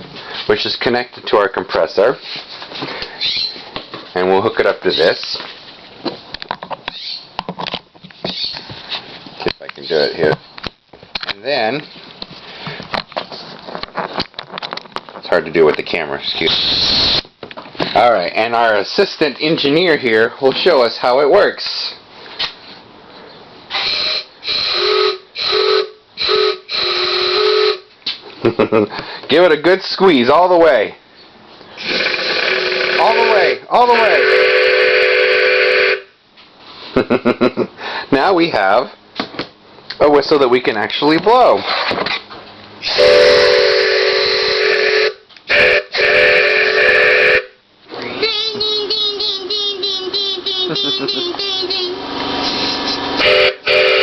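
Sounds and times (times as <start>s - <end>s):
air hiss: 16.4s - 17.2s, 23.7s - 27.8s
wooden train whistle: 23.7s - 27.9s, 32.4s - 36.1s, 42.8s - 47.6s, 53.2s - 54.0s.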